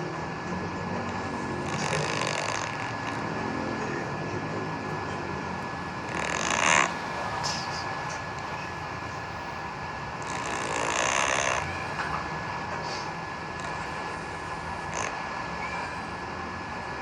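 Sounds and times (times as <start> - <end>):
steady low rumble: 0.0 - 17.0
cat snoring: 0.5 - 17.0.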